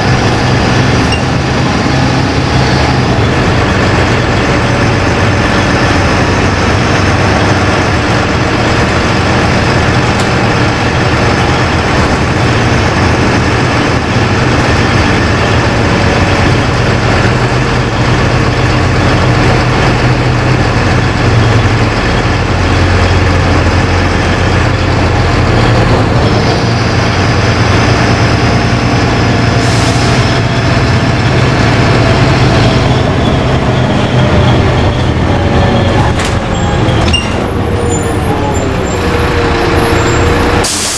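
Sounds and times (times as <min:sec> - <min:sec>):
bus diesel engine running: 0:00.0 - 0:40.9
compressed air hiss: 0:40.6 - 0:40.9.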